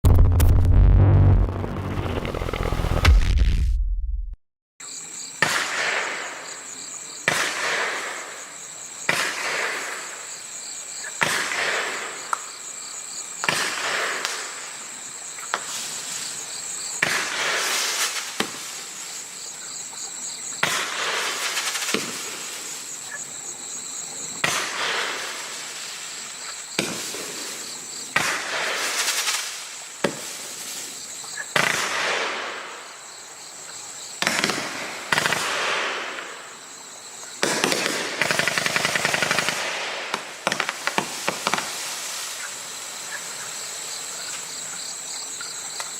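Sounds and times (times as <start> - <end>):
crickets chirring: 6.0 - 7.3, 9.8 - 11.2, 11.9 - 13.5, 14.4 - 28.2, 28.9 - 31.6, 32.5 - 35.4, 36.0 - 39.6, 40.2 - 45.9.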